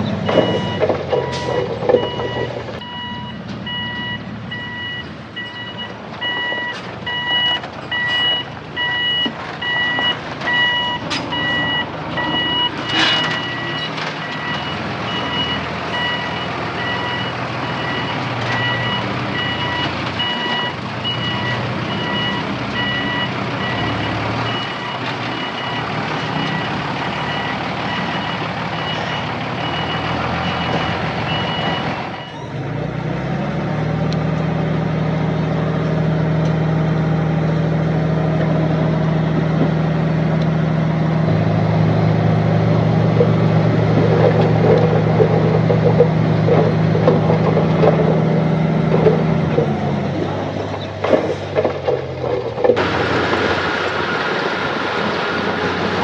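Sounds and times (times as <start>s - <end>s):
diesel machine engine running: 0.0s - 56.0s
reversing alarm beeping: 0.2s - 32.5s.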